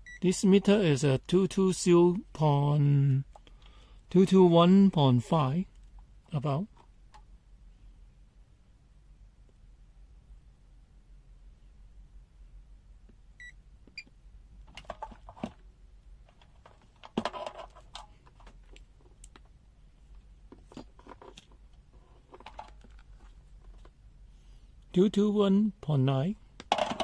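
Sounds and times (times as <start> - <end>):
meter and test leads handled: 16.3 - 19.5.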